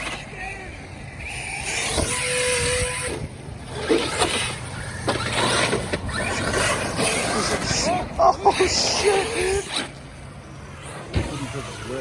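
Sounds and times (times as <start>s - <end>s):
electric motor whine: 0.0s - 8.2s.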